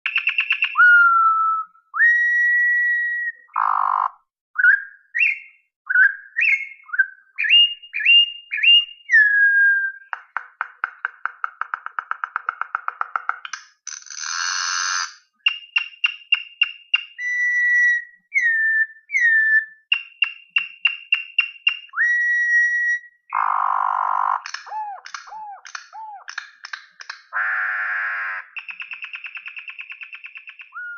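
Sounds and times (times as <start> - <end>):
bird whistling song: 0.1 - 10.2, 14.5 - 30.9
bird dry rattling clicks: 24.4 - 27.3.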